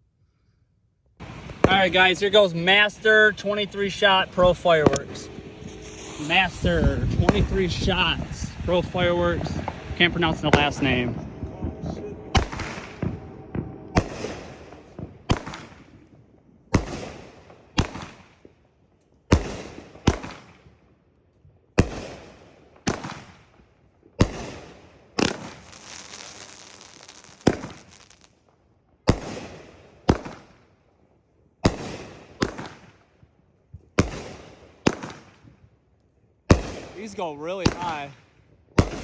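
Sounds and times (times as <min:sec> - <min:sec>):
firework booms echoing: 0:01.2 - 0:18.2, 0:24.2 - 0:28.2, 0:38.8 - 0:39.0
fireworks crackling: 0:01.2 - 0:18.4, 0:24.2 - 0:28.5, 0:36.5 - 0:38.2, 0:38.8 - 0:39.0.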